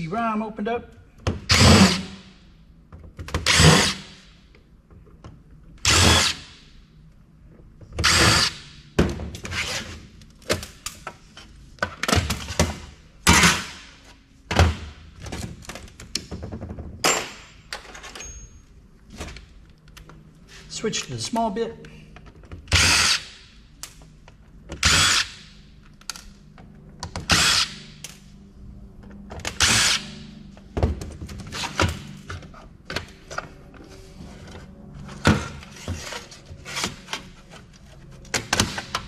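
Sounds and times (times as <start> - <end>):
power screwdriver bursts: 1.5 - 2.2, 3.4 - 4.1, 8.0 - 8.6, 22.7 - 23.4, 24.8 - 25.4, 27.3 - 27.9, 29.6 - 30.1.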